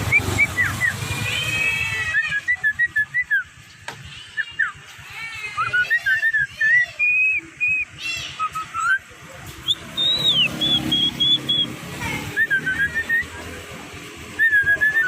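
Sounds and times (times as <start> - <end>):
bird whistling notes: 0.0 - 1.2, 2.1 - 3.6, 5.6 - 13.4, 14.3 - 15.0.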